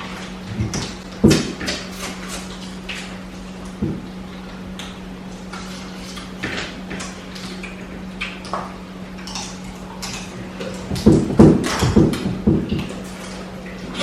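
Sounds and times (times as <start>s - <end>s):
steady low hum: 0.0s - 14.0s
loud knocks: 0.6s - 1.8s, 3.8s - 4.1s, 10.9s - 12.9s.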